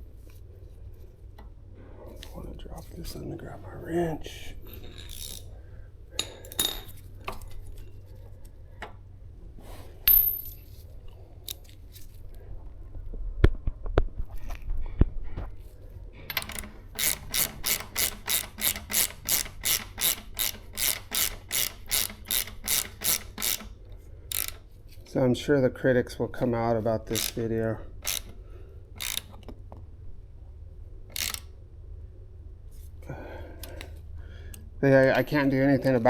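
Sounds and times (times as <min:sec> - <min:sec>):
ratchet wrench clicking: 0:04.8 - 0:05.5, 0:16.3 - 0:24.7, 0:27.0 - 0:29.5, 0:31.1 - 0:31.5.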